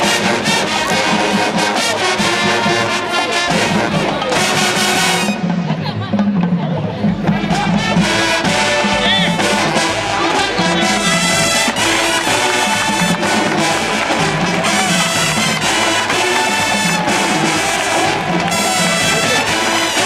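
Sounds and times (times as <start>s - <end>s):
trumpets and trombones chords: 0.0s - 5.8s, 7.2s - 20.0s
marching band playing: 0.0s - 20.0s.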